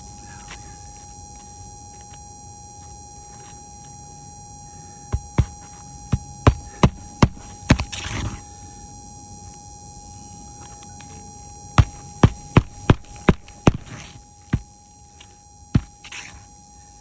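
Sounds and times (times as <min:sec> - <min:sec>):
hand tool knocking on roof shingles: 0:05.1 - 0:08.0, 0:11.8 - 0:14.7.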